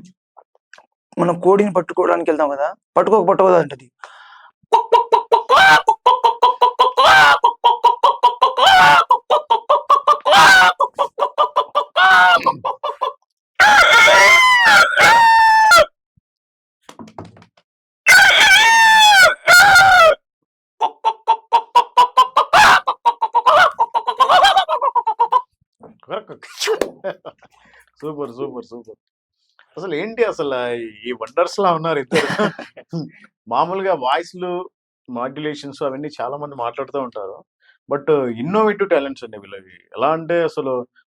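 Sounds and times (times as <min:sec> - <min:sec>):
man imitating hen clucking: 0:04.7 - 0:15.7, 0:20.8 - 0:25.4
drawn-out squawking call: 0:04.8 - 0:15.8, 0:20.8 - 0:25.4.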